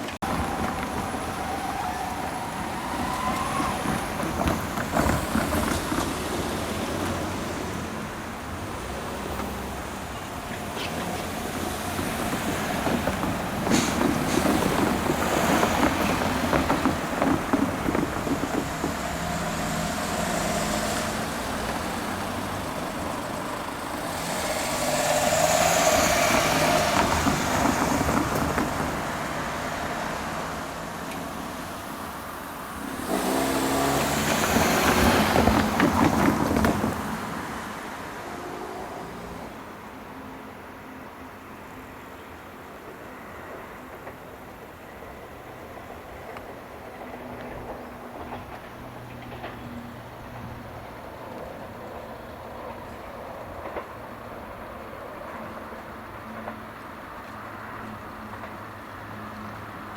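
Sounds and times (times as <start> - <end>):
vehicles driving over level crossing: 0.0 - 38.2.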